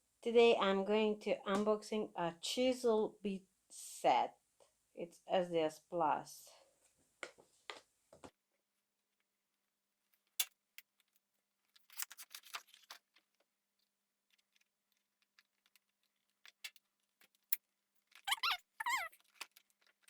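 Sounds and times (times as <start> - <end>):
short squeaky scrapes: 18.2 - 19.3.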